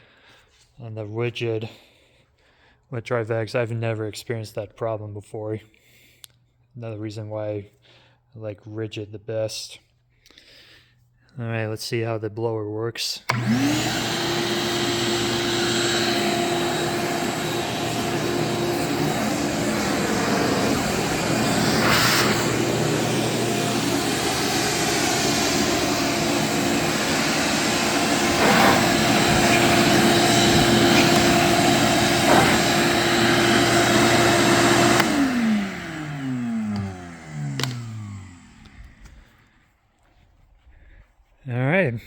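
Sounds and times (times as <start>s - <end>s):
shop vacuum motor whine: 13.3s - 39.6s
rushing air: 14.5s - 35.2s.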